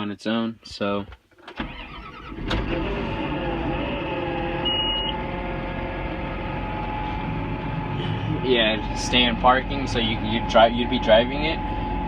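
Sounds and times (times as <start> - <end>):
tractor engine starting and idling: 1.3 - 10.1.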